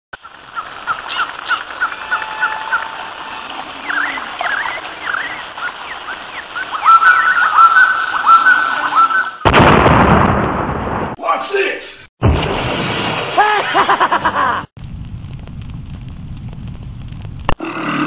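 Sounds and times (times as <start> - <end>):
birds chirping: 0.2 - 9.4
loud rising bird call: 0.5 - 9.4.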